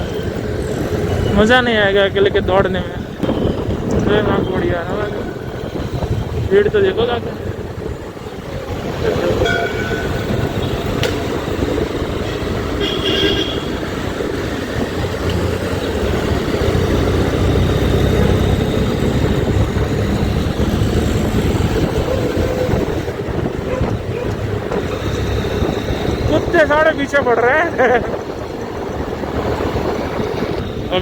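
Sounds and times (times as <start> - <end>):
motorcycle engine and wind rumble: 0.0 - 31.0
motorcycle horn toots: 9.4 - 10.8, 12.8 - 13.8.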